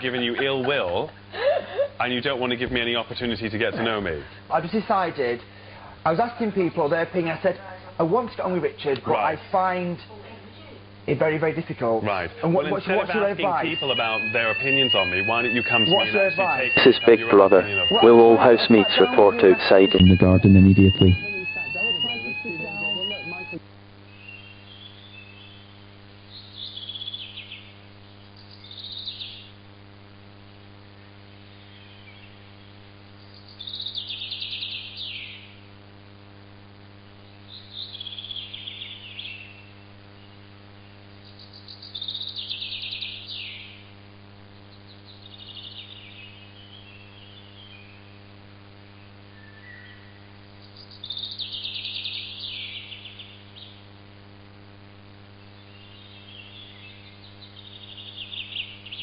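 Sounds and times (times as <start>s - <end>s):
low electrical hum: 0.0s - 59.0s
bird singing: 13.2s - 27.7s, 28.3s - 29.5s, 33.2s - 35.6s, 37.5s - 40.3s, 41.2s - 43.8s, 44.9s - 48.1s, 49.0s - 53.8s, 55.5s - 59.0s.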